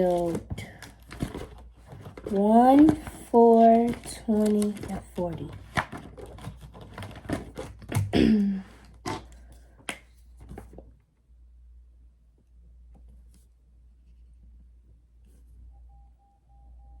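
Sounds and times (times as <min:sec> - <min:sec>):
paper bills clicking and rustling: 0:00.0 - 0:08.2.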